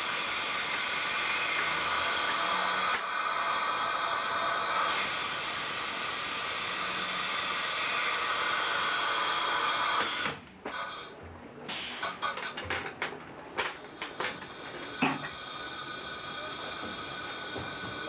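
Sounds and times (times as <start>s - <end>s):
loud hiss of rushing air: 0.0s - 10.4s.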